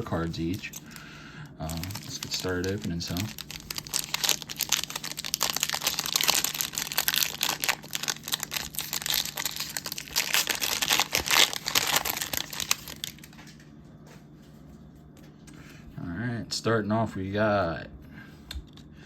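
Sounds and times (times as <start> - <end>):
plastic wrapper tearing and crinkling: 0.0 - 1.0, 1.6 - 13.5.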